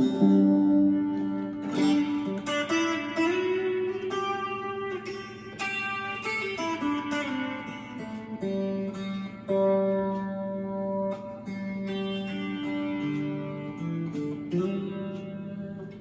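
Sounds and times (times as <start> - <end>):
electric guitar notes and chords: 0.0 - 16.0.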